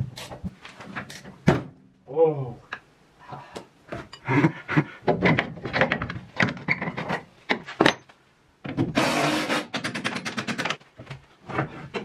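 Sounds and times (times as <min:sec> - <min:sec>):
hard objects knocking and clicking: 0:03.9 - 0:09.0, 0:09.6 - 0:12.0.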